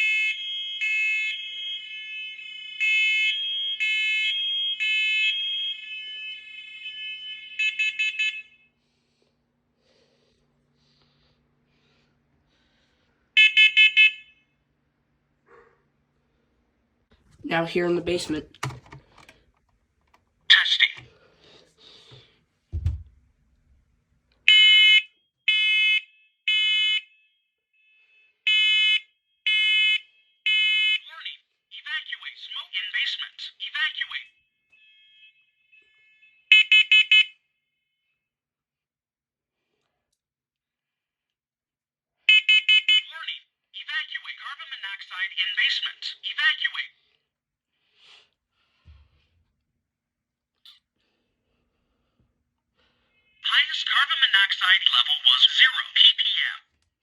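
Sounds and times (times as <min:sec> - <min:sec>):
smoke alarm beeping: 0:00.0 - 0:08.7, 0:13.4 - 0:14.4, 0:27.7 - 0:31.0, 0:34.7 - 0:37.3, 0:42.3 - 0:43.0.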